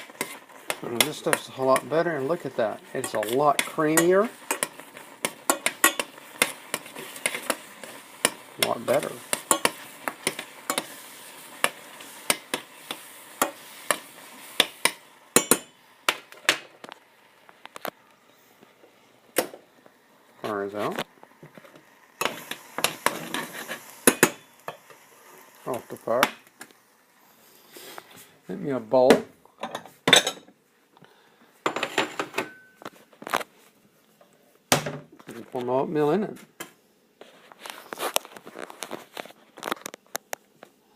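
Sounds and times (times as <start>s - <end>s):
steady hiss: 0.0s - 29.6s
spoon clinking against cooking pot: 3.0s - 7.6s
dishes clinking and clattering: 29.6s - 30.5s, 31.7s - 32.9s.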